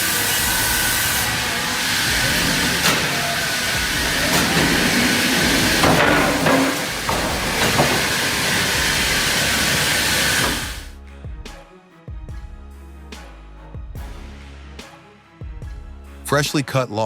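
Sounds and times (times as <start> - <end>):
rushing machine noise: 0.0 - 10.9
sharp knocks: 2.2 - 10.8.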